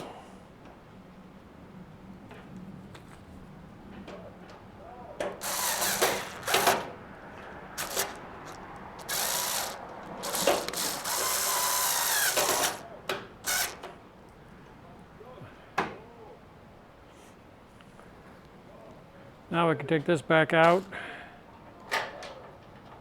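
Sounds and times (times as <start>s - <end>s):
cordless driver whirring: 5.4s - 7.0s, 7.6s - 12.8s, 13.4s - 13.9s.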